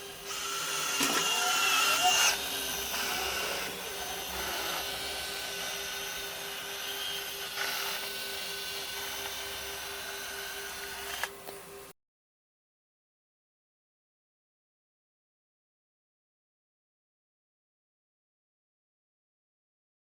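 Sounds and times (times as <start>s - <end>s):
robot vacuum cleaner whine: 0.0s - 11.9s.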